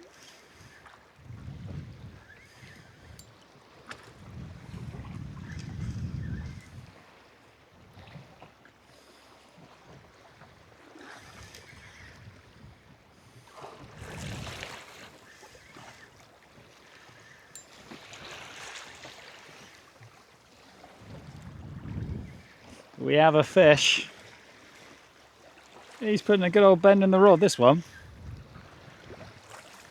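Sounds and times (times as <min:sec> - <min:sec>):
wind blowing over microphone: 0:01.2 - 0:02.3, 0:04.2 - 0:07.0, 0:21.0 - 0:23.6, 0:27.8 - 0:29.4
water slapping against boat: 0:13.6 - 0:17.1.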